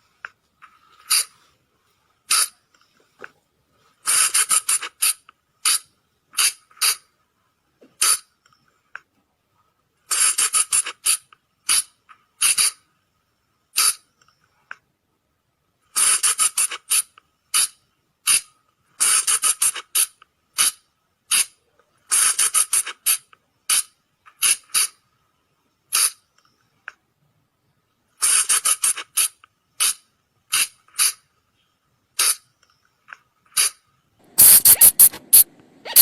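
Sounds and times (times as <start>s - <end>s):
shrill squeaky animal calls: 34.4s - 36.0s.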